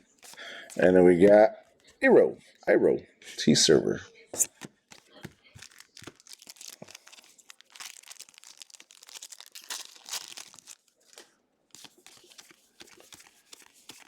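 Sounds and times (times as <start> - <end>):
foil wrapper crinkling and tearing: 4.4 - 14.0.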